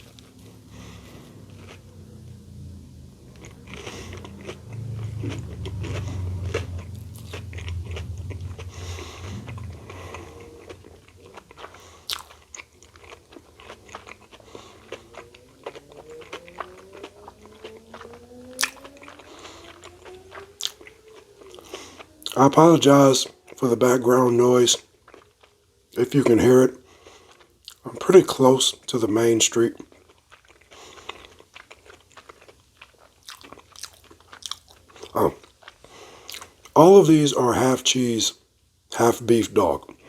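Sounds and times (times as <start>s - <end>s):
crunchy chewing: 0.0s - 2.4s, 3.2s - 36.8s
vehicle engine accelerating: 0.0s - 24.6s
street traffic rumble: 0.0s - 26.7s.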